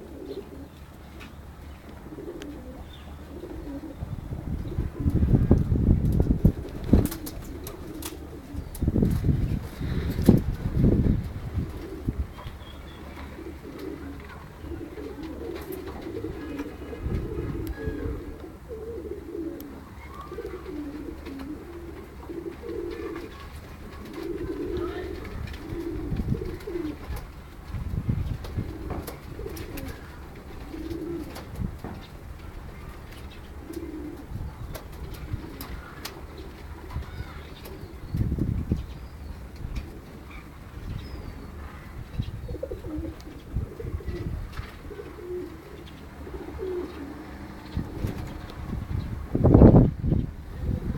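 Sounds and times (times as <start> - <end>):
pigeons cooing: 0.0 - 50.9.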